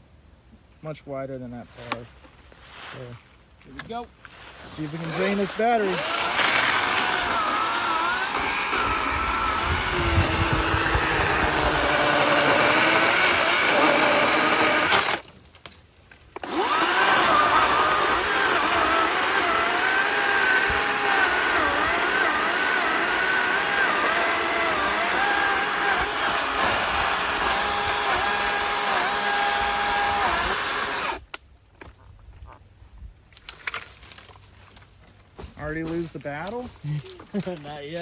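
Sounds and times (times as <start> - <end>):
chainsaw cutting wood: 5.0 - 15.4, 16.3 - 31.3.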